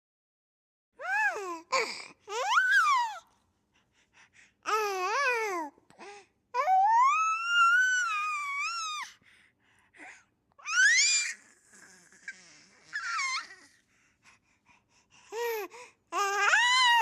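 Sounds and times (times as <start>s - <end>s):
baby squealing and cooing: 2.3s - 3.2s, 6.6s - 9.1s, 10.6s - 13.8s, 16.2s - 17.0s.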